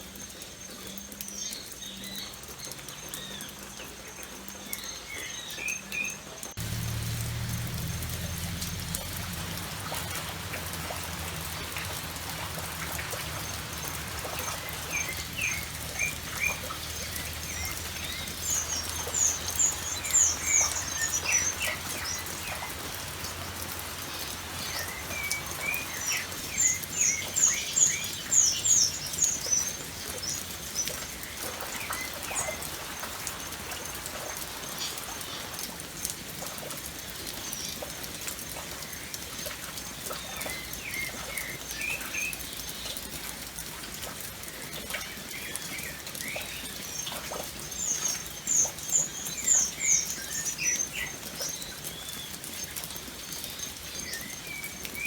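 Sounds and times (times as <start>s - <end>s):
rain pattering: 0.0s - 55.0s
water dripping: 0.0s - 55.0s
birds chirping: 4.6s - 35.6s.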